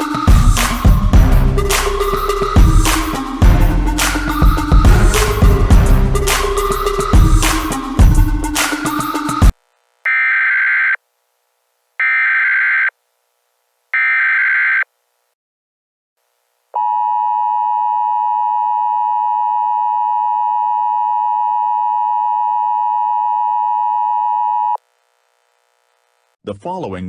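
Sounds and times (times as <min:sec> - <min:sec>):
buzzy screeching data bursts: 0:10.1 - 0:11.0.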